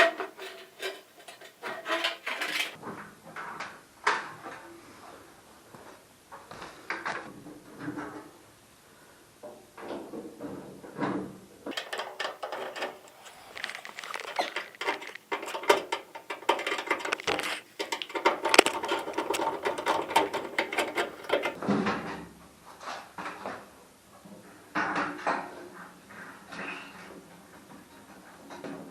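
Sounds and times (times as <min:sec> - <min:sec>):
fast metallic clicking and rattling: 0:00.0 - 0:02.8, 0:11.7 - 0:21.6.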